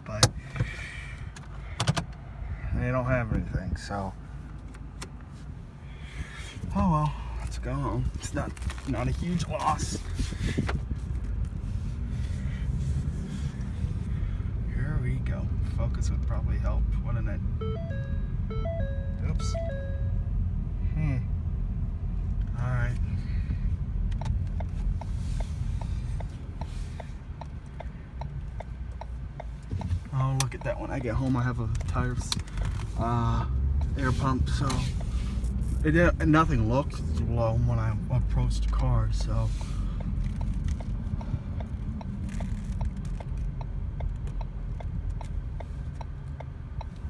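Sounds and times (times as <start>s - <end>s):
low rumble inside car: 0.0s - 47.0s
car turn signal ticking: 17.5s - 20.2s, 23.5s - 35.2s, 36.0s - 47.0s.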